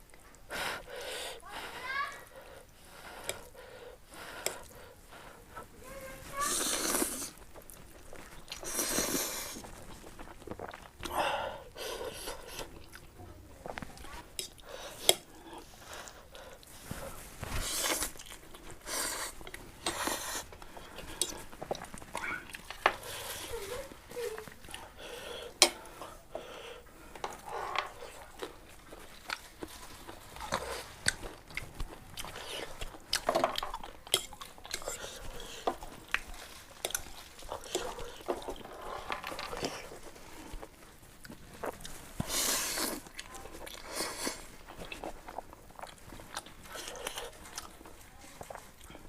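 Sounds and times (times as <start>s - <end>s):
person chewing food: 2.4s - 49.0s
person slurping noodles: 6.3s - 7.4s, 8.5s - 9.7s, 17.6s - 21.4s, 42.2s - 43.2s.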